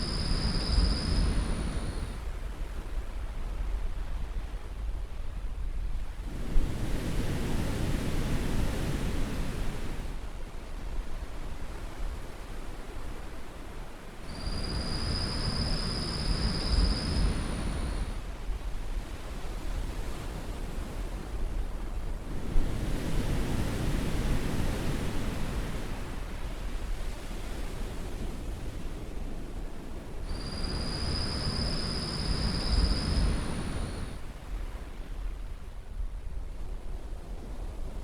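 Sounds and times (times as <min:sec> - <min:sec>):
steady high pure tone: 0:00.0 - 0:02.2, 0:14.4 - 0:18.1, 0:30.3 - 0:34.2
surf washing on beach: 0:29.7 - 0:35.7.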